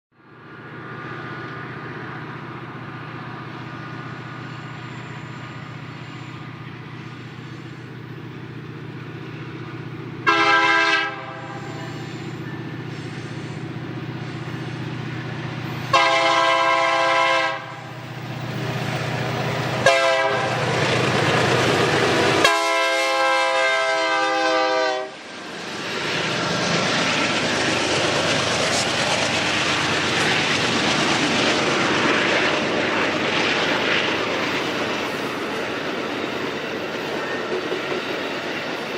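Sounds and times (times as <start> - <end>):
diesel locomotive engine running: 0.2 - 38.9
train passing rush and rattle: 0.2 - 38.9
train air horn blasts: 10.2 - 13.6, 15.9 - 17.9, 19.8 - 20.6, 22.3 - 25.2.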